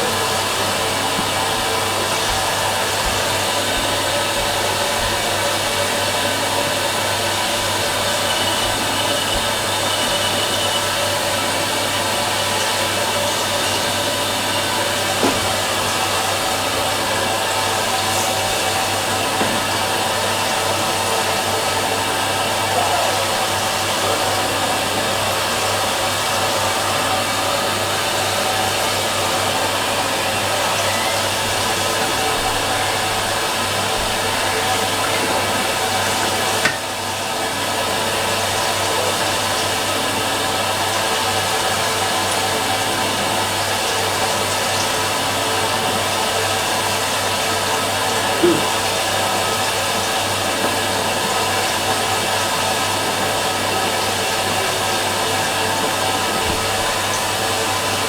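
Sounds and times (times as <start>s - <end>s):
washing machine whirring: 0.0s - 58.0s.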